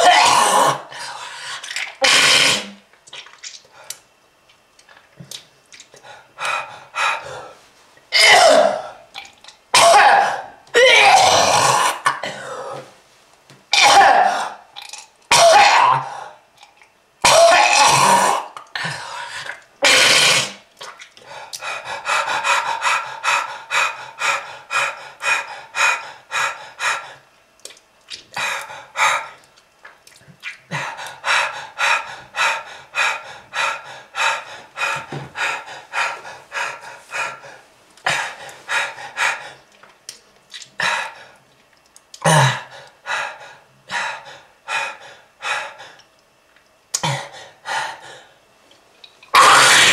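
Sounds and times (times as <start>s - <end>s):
person coughing: 8.2s - 9.0s, 9.8s - 12.8s, 17.3s - 18.4s.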